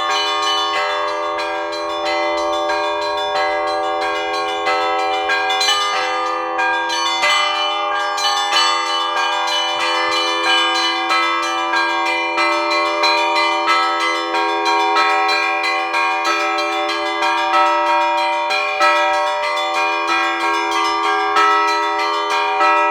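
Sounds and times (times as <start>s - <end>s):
church bells pealing: 0.0s - 22.9s.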